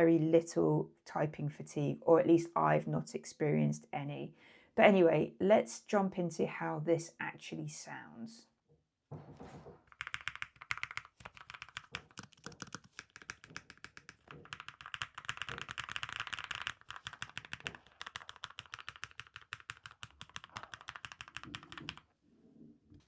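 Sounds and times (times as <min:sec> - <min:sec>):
mechanical keyboard typing: 0:09.9 - 0:22.1.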